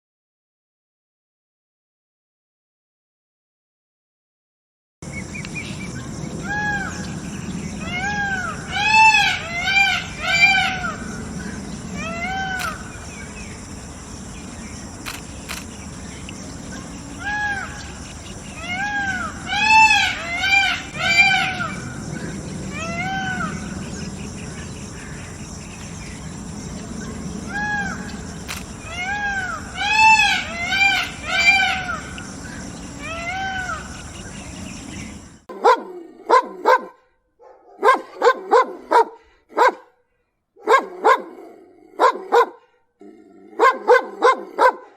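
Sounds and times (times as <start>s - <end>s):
outdoor background noise: 5.0s - 44.9s
steady background hiss: 5.1s - 35.5s
animal crying: 7.7s - 13.2s, 16.7s - 25.4s, 27.0s - 34.7s.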